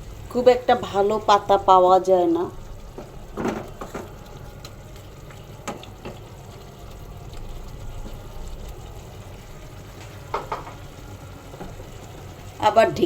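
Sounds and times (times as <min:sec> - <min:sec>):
food sizzling in a pan: 0:00.0 - 0:13.0
utensil knocking against pan: 0:10.3 - 0:10.8.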